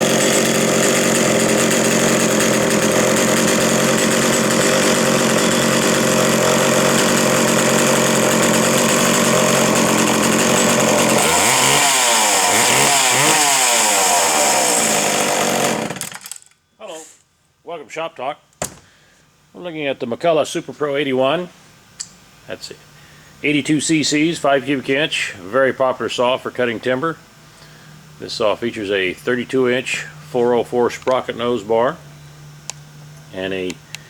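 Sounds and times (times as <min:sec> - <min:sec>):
chainsaw revving: 0:00.0 - 0:16.4.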